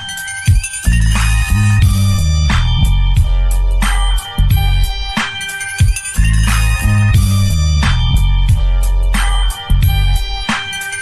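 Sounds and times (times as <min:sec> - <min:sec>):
phone ringtone tune with bass: 0:00.0 - 0:11.0.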